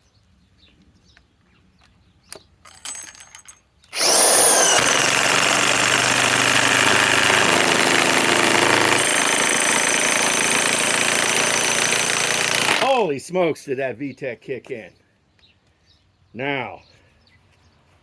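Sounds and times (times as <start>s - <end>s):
impact wrench hammering: 4.0s - 12.9s.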